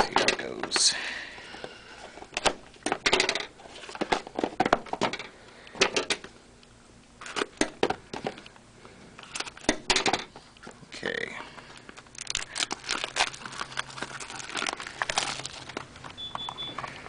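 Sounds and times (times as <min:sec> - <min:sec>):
plastic wrap crinkling: 0:11.7 - 0:17.0.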